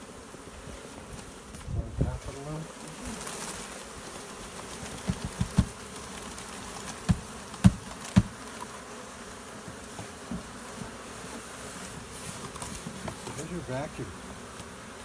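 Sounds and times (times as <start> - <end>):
honeybee swarm buzzing: 0.0 - 15.0
dull knocks on hive box: 4.8 - 6.0, 6.9 - 8.7, 9.6 - 11.0, 11.9 - 13.5.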